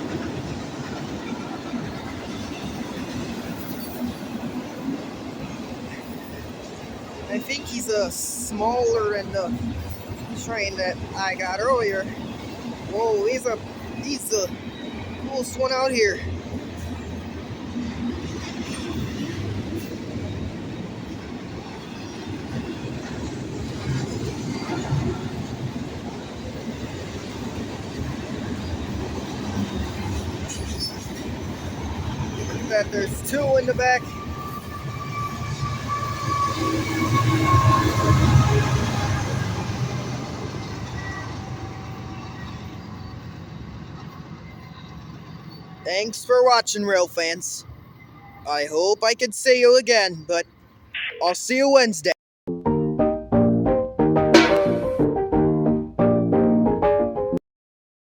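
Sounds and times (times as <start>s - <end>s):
freight train wheels rumbling: 0.0s - 45.8s.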